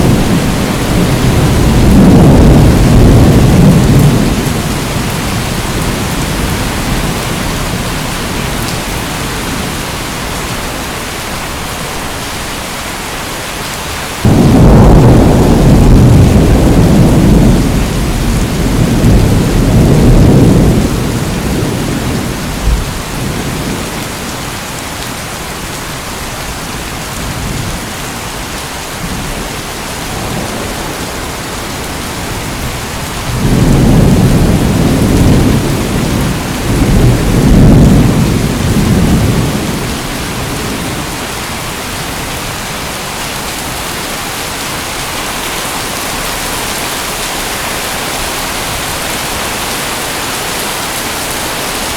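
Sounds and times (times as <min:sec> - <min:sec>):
rolling thunder rumbles: 0:00.0 - 0:11.2, 0:14.2 - 0:24.7, 0:25.6 - 0:44.4
heavy rain hissing: 0:00.0 - 0:51.9.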